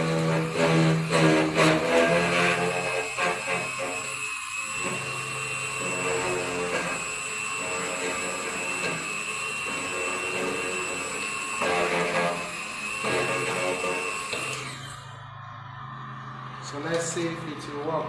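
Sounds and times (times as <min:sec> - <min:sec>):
key cutting machine whine: 0:00.0 - 0:18.0.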